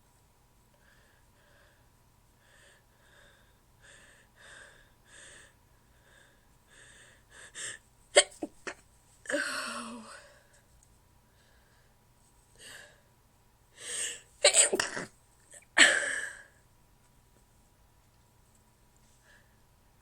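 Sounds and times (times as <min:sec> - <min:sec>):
woman hitching breaths: 0:13.8 - 0:14.3
woman stifled sneezes: 0:14.4 - 0:15.1.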